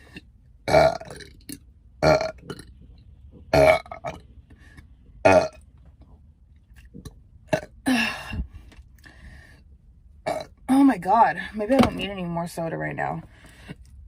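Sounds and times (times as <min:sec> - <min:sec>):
woman burping: 0:00.1 - 0:02.6, 0:03.5 - 0:04.2, 0:05.2 - 0:05.6, 0:07.5 - 0:08.5, 0:10.3 - 0:10.6.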